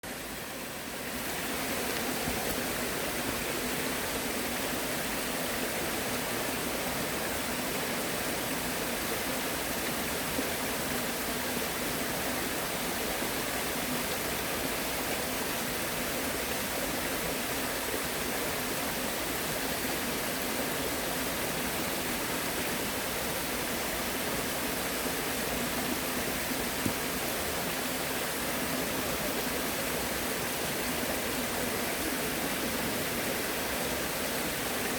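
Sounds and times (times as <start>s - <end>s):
flowing water rushing: 0.0s - 34.9s.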